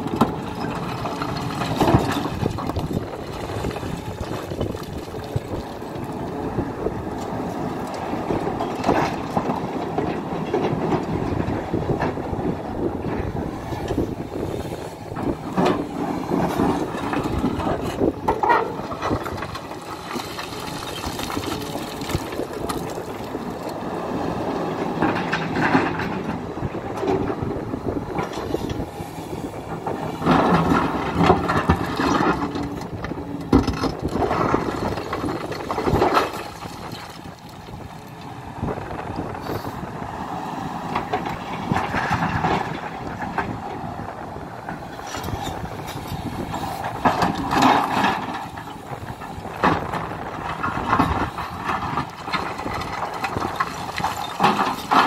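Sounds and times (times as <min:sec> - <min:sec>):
bucket and rocks clanking: 0:00.0 - 0:06.3, 0:15.1 - 0:23.8, 0:30.2 - 0:38.2, 0:45.0 - 0:55.0
diesel engine under load: 0:00.0 - 0:55.0.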